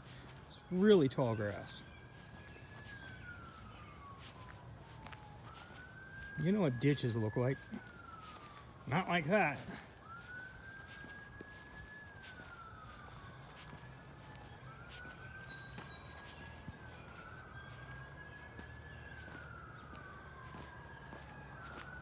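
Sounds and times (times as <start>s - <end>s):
emergency vehicle siren wailing: 0.0s - 22.0s.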